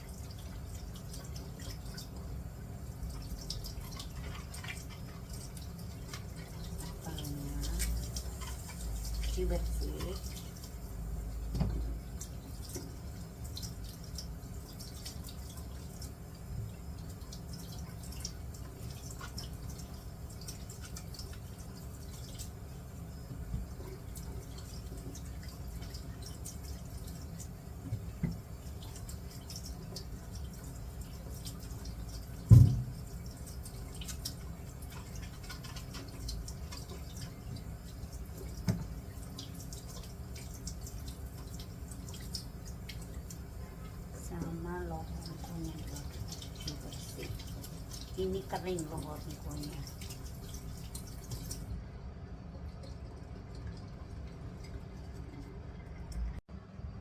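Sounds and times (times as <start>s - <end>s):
kitchen tap water running: 0.0s - 51.8s, 52.5s - 56.4s
apples knocking in sink: 11.5s - 12.0s, 32.4s - 33.0s
loud thump: 32.5s - 32.9s.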